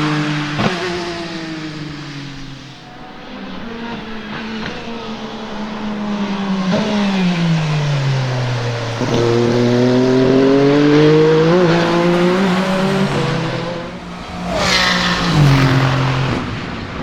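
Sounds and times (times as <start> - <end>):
race car engine accelerating: 0.0 - 17.0.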